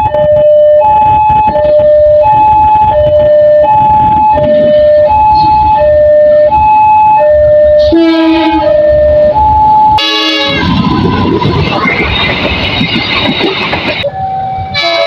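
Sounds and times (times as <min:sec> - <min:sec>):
two-tone hi-lo siren: 0:00.0 - 0:13.0, 0:14.0 - 0:15.0
low rumble: 0:10.5 - 0:14.1.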